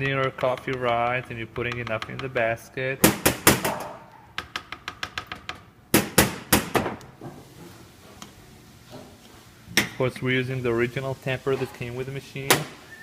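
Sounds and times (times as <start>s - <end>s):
sharp knocks of metal and plastic: 3.0s - 7.0s.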